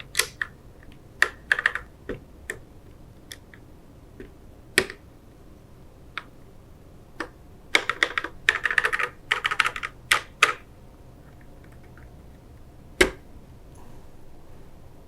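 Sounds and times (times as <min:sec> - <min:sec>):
mechanical keyboard typing: 0:00.0 - 0:00.5, 0:01.2 - 0:01.9, 0:07.2 - 0:10.7.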